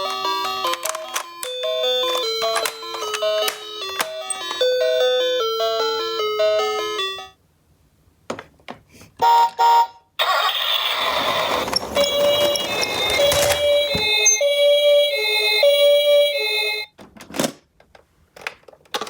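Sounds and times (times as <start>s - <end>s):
toy electronic siren: 10.2s - 16.8s
rattling noise: 11.2s - 14.5s
chime-like jingle: 14.1s - 14.8s.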